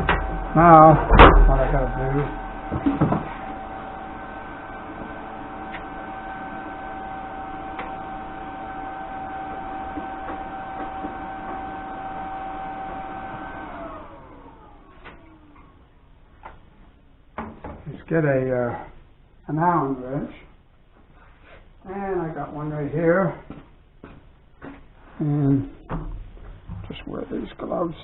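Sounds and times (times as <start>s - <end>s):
electric motor whining: 0.0s - 15.5s.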